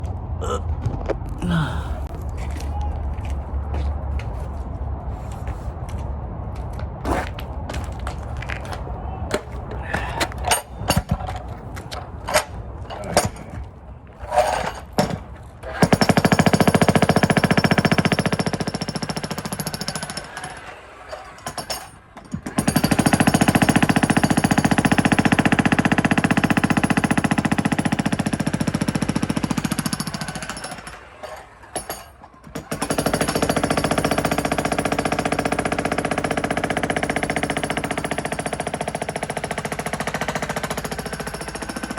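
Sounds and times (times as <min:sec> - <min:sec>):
sharp knocks and clatter: 0:10.3 - 0:20.5
jackhammer breaking concrete: 0:14.2 - 0:41.9.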